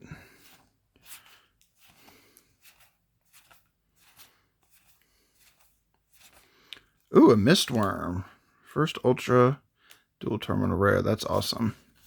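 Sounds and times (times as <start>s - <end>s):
cards being handled: 0.2s - 8.3s.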